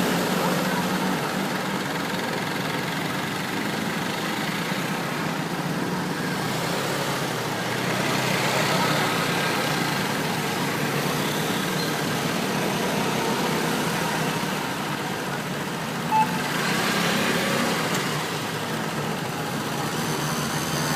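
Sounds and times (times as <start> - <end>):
brief short tone: 16.1 - 16.5.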